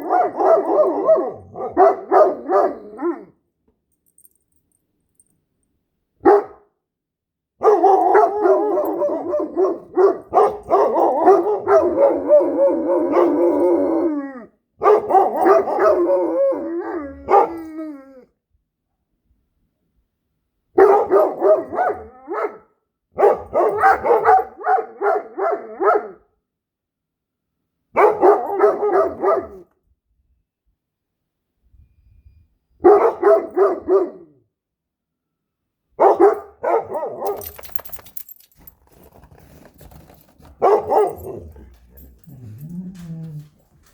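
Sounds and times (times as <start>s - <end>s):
dogs howling: 10.7s - 14.5s, 15.1s - 18.2s.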